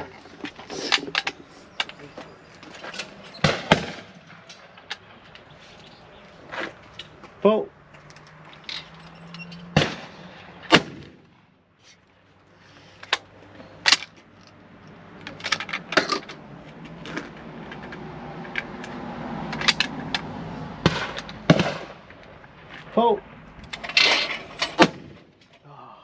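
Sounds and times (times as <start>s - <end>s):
shotgun firing: 3.4s - 4.5s, 9.8s - 11.3s, 20.9s - 22.0s
metallic clicks: 8.0s - 9.8s, 13.0s - 22.5s.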